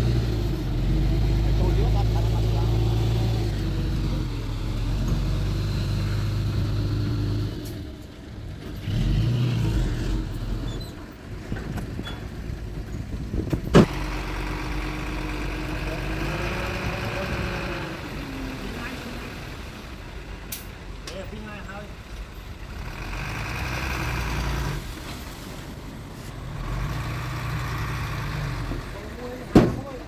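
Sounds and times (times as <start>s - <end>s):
heavy machinery diesel engines: 0.0s - 30.0s.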